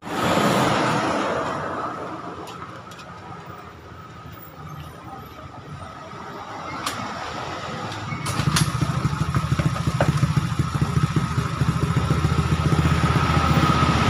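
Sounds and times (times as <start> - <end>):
scooter engine running: 8.3 - 14.0.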